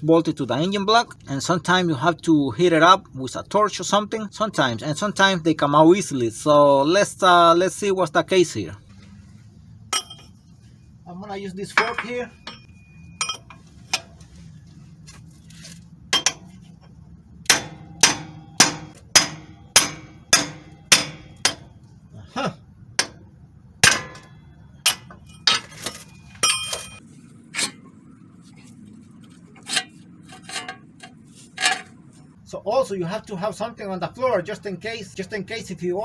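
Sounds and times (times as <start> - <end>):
pry fork striking metal axle: 10.0 - 10.3, 11.8 - 14.2, 16.2 - 16.6, 17.5 - 21.8, 23.0 - 23.2, 23.8 - 27.8, 29.6 - 32.0.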